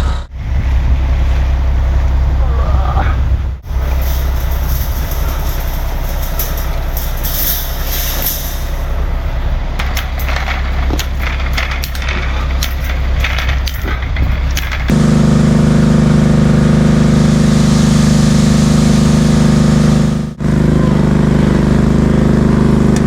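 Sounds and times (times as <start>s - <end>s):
diesel engine droning: 0.0s - 23.0s
clicks and scrapes: 3.6s - 8.9s, 9.8s - 15.0s.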